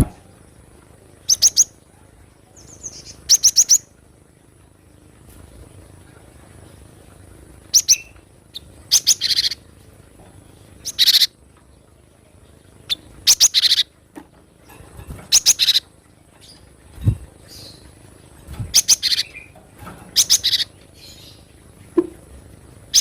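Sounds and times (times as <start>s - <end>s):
bird high chirps: 1.3s - 1.7s, 7.7s - 9.6s, 10.8s - 11.3s, 12.9s - 13.9s, 15.3s - 15.8s, 18.7s - 19.6s, 20.2s - 21.4s.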